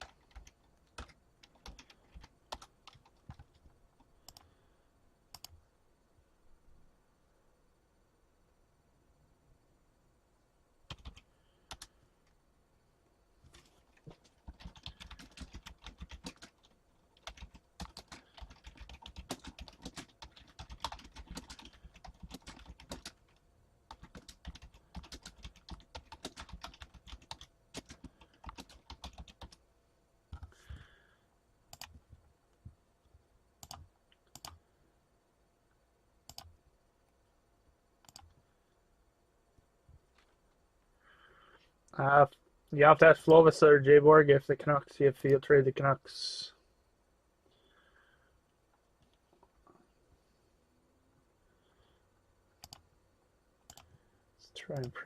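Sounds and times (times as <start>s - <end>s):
typing on keyboard: 0.0s - 4.5s, 5.3s - 5.6s, 10.9s - 11.9s, 13.6s - 29.6s, 30.3s - 30.6s, 31.7s - 32.1s, 33.6s - 34.6s, 36.3s - 36.5s, 38.0s - 38.4s, 52.6s - 52.9s, 53.7s - 54.0s.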